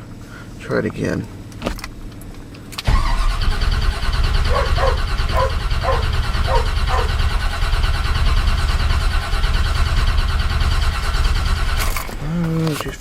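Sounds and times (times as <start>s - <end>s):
starter motor cranking engine: 2.8s - 13.0s.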